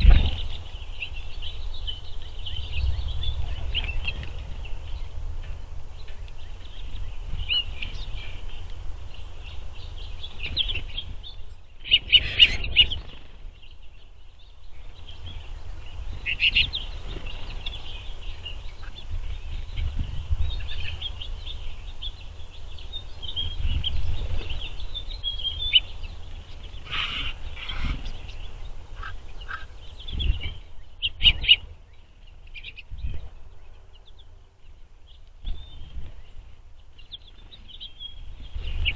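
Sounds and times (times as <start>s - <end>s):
steady low rumble: 0.0s - 11.9s
finches twittering: 0.0s - 38.9s.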